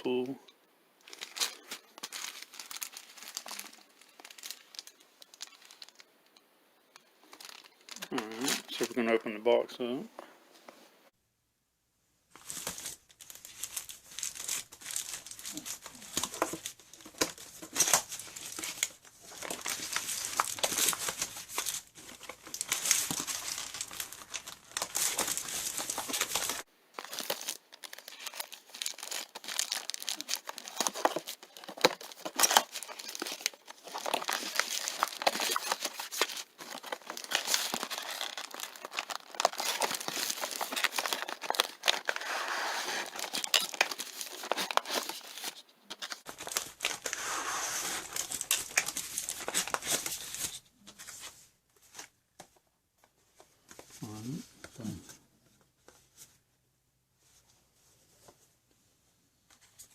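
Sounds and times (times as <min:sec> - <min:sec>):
packaging crinkling and rustling: 0:01.0 - 0:09.0, 0:12.3 - 0:54.0
packaging tearing: 0:01.1 - 0:06.0, 0:12.4 - 0:50.6.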